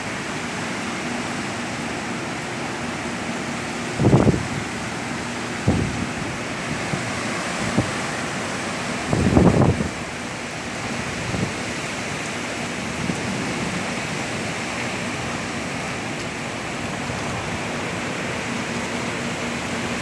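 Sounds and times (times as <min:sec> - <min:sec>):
heavy rain pouring: 0:00.0 - 0:20.0
wind gust rumble: 0:09.0 - 0:10.2.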